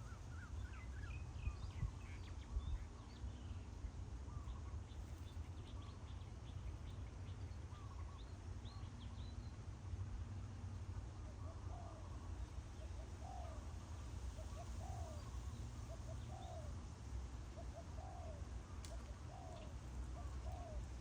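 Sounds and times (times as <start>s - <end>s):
dove cooing: 17.6s - 21.0s.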